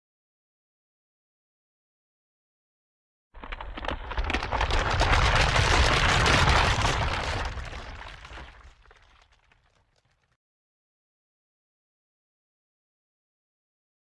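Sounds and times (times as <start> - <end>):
deep rumble: 3.4 - 8.7
crackling of breaking ground: 3.4 - 10.2.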